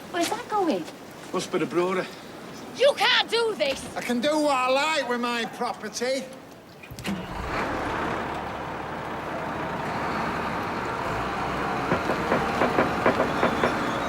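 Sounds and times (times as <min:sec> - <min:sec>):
bulldozer diesel engine running: 0:07.1 - 0:14.0.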